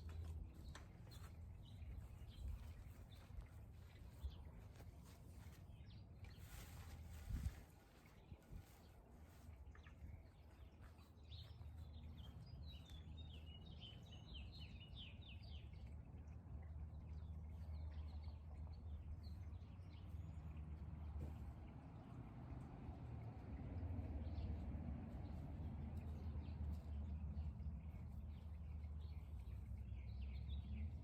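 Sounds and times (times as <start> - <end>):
songbird chirping: 0.0 - 31.0.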